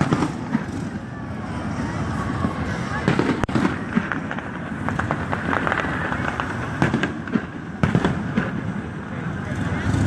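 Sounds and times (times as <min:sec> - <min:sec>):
fireworks crackles and pops: 0:00.0 - 0:10.0
crackling hiss: 0:02.4 - 0:09.9.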